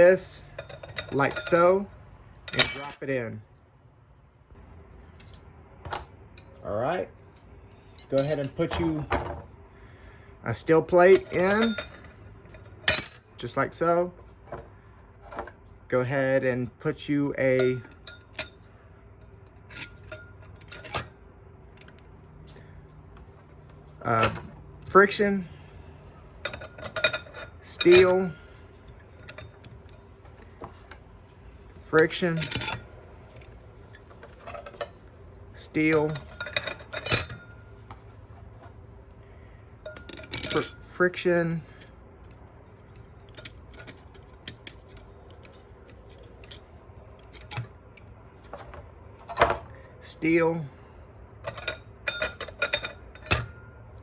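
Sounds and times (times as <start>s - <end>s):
low steady hum: 0.0s - 54.0s
metal clutch plates clinking: 0.4s - 3.2s, 7.2s - 9.5s, 10.9s - 13.4s, 17.4s - 25.2s, 26.2s - 31.0s, 31.8s - 38.1s, 39.8s - 41.0s, 41.7s - 49.7s, 51.4s - 54.0s.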